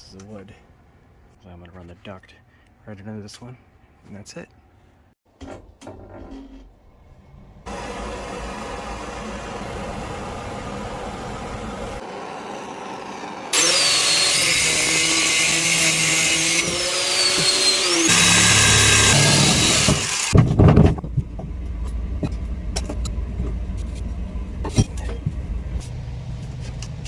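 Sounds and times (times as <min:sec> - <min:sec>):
power tool motor running: 0:07.7 - 0:20.4
knocks and clatter: 0:19.4 - 0:27.0.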